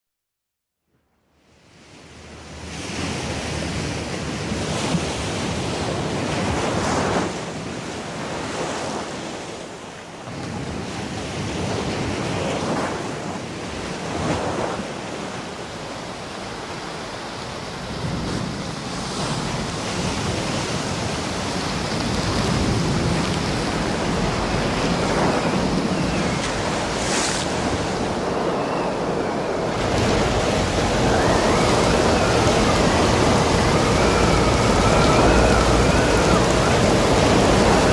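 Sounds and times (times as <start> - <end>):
ocean waves breaking: 1.6 - 37.9
stormy wind: 1.7 - 37.9.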